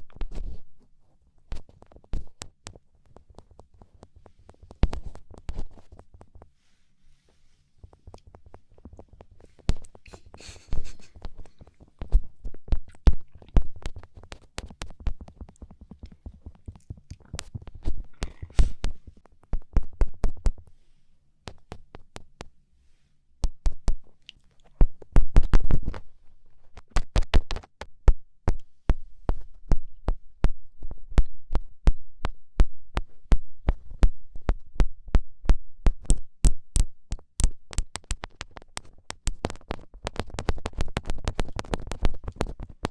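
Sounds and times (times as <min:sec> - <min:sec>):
fingertips tapping on a microphone: 0:00.0 - 0:06.6, 0:07.3 - 0:20.8, 0:21.4 - 0:22.6, 0:23.4 - 0:42.9.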